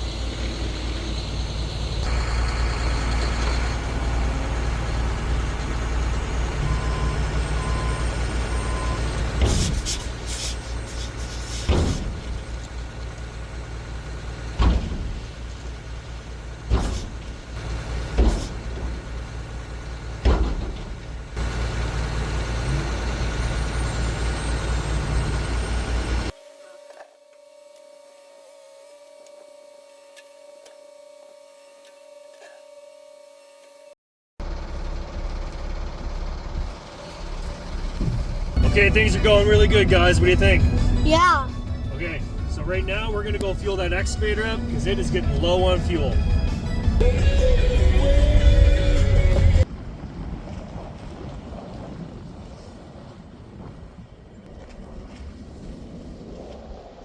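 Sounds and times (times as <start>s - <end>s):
heavy diesel machinery running: 0.0s - 26.4s, 34.4s - 50.3s.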